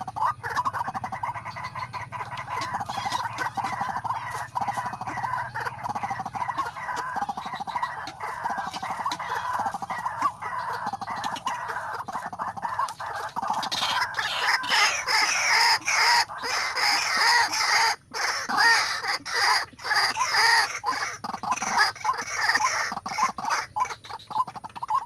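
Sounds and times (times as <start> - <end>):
waterhen harsh calls: 0.0 - 25.0.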